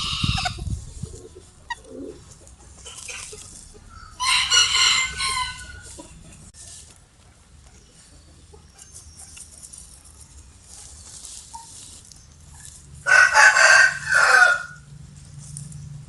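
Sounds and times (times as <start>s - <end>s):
rooster crowing: 4.0s - 5.9s, 13.0s - 14.9s.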